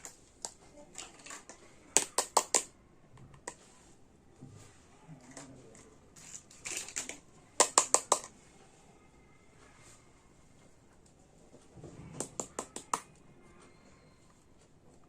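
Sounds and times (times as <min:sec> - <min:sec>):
plastic toy pieces clicking: 0:00.0 - 0:02.7, 0:06.2 - 0:08.3.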